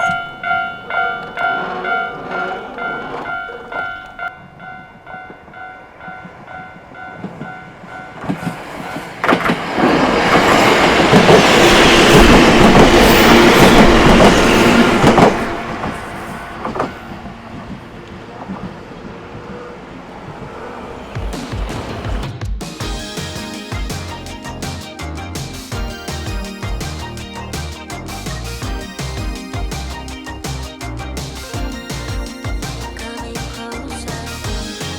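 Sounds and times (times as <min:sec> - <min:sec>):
wheels clacking over rail joints: 0:00.0 - 0:22.2
train rumbling and clattering: 0:00.0 - 0:34.9.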